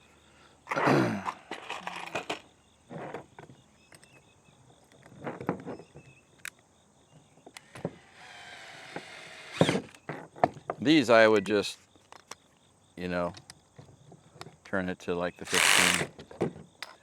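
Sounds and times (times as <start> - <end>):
wrench ratcheting and scraping: 15.5 - 16.1.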